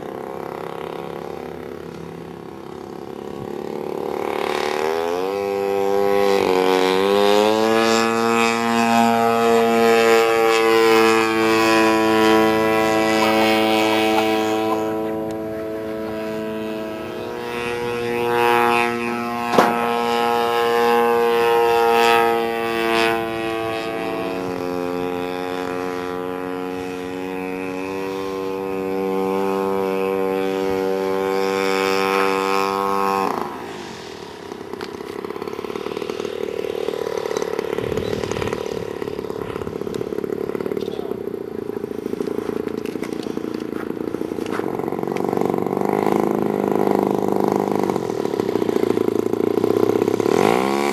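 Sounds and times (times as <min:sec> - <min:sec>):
model airplane gas engine running: 0:00.0 - 0:50.9
soft unpitched drone: 0:00.0 - 0:50.9.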